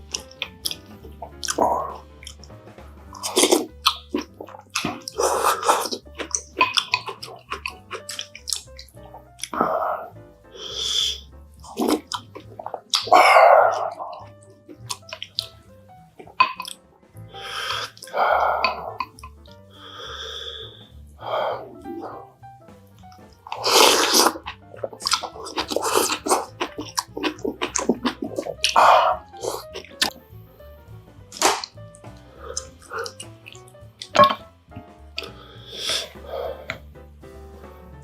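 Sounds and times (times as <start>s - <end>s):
wet eating bursts: 0.0s - 38.0s
crisp chewing clicks: 3.2s - 9.6s, 23.1s - 30.2s.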